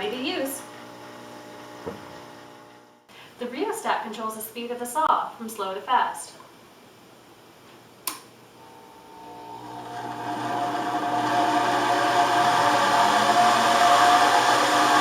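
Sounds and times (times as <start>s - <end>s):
switch click: 8.0s - 8.3s
band saw motor whining: 8.6s - 15.0s.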